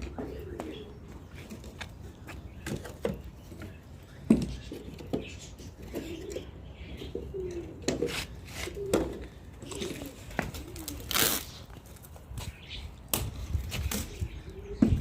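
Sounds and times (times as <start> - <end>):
pigeons cooing: 0.0 - 1.8, 2.6 - 11.6, 13.9 - 15.0.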